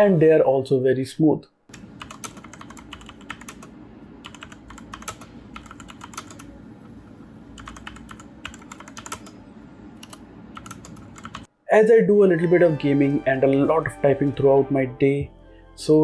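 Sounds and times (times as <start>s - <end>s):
mechanical keyboard typing: 2.0s - 6.5s, 7.6s - 9.4s, 10.0s - 11.5s.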